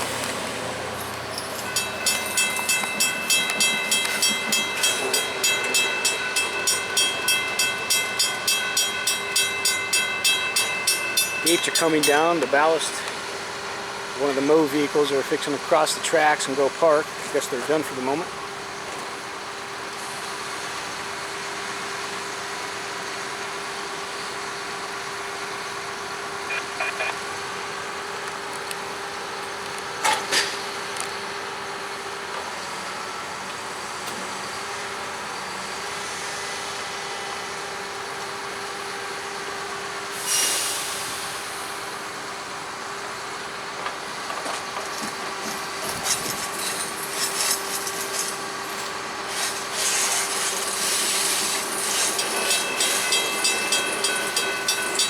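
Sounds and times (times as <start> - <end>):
truck engine hum: 0.0 - 19.9, 24.8 - 30.0, 40.8 - 54.2
held tone: 26.5 - 27.2
air hiss: 40.2 - 41.8.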